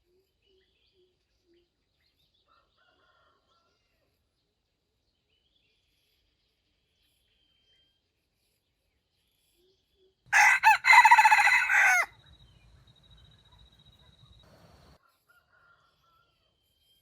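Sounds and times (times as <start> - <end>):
rooster crowing: 10.3 - 12.2.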